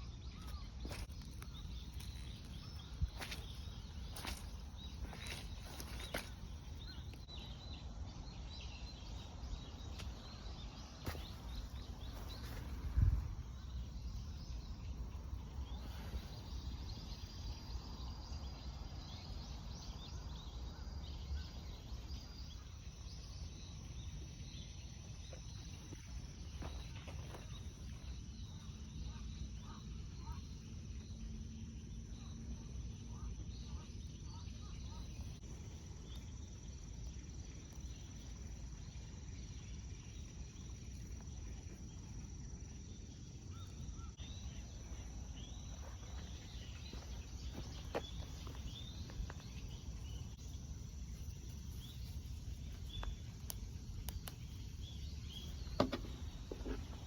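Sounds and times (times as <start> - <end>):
faint bird chirps: 0.0 - 57.0
insect trill: 0.0 - 57.0
steady low rumble: 0.9 - 21.3.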